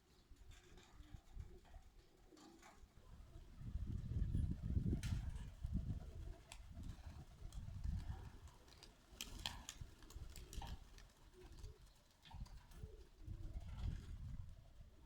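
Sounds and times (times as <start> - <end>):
pigeons cooing: 6.0 - 14.9.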